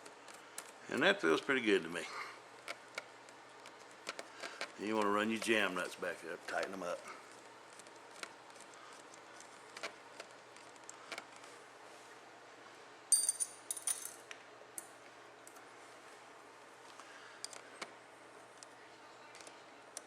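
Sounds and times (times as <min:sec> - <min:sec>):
ringing metal clinks: 0:13.1 - 0:14.2.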